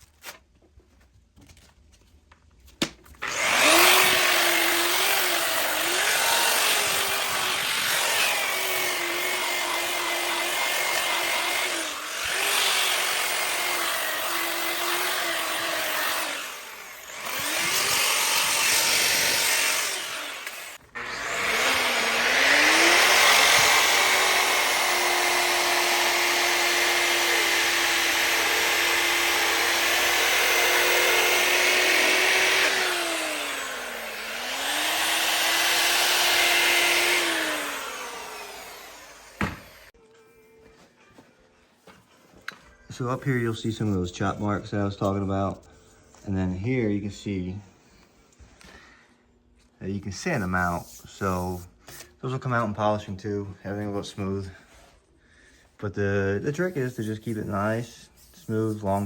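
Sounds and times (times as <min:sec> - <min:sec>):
grinder motor whine: 0:03.2 - 0:39.9
sanding disc rasping on iron: 0:56.4 - 0:59.0.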